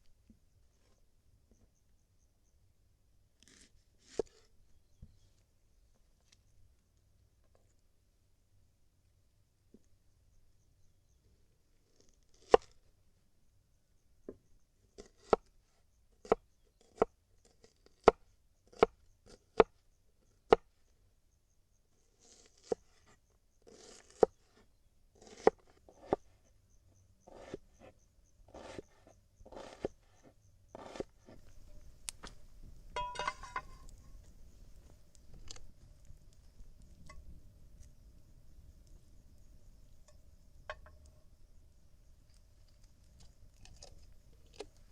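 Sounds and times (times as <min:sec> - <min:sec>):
knife chopping on cutting board: 0:27.3 - 0:27.6, 0:28.6 - 0:28.8, 0:29.5 - 0:29.9, 0:30.8 - 0:31.0.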